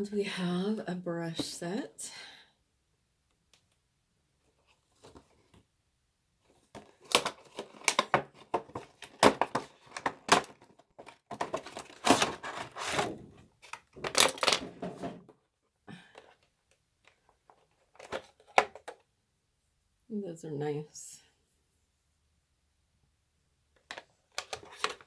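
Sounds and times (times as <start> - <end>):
packaging crackling and rustling: 6.6 - 15.3, 23.8 - 25.0.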